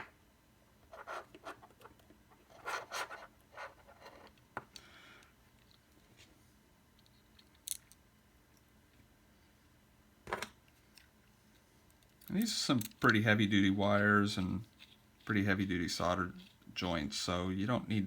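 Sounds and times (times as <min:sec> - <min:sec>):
small parts scratching and rubbing: 0:00.8 - 0:04.4, 0:14.4 - 0:15.4, 0:16.0 - 0:16.7.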